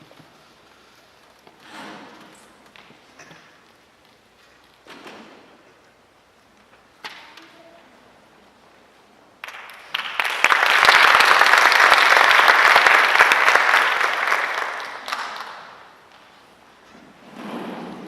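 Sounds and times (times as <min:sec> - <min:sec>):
audience applauding: 0:09.4 - 0:16.0.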